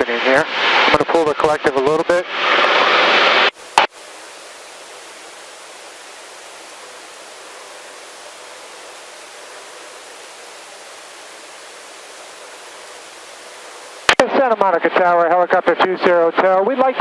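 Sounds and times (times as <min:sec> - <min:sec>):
faint steady tones: 0:03.6 - 0:14.2.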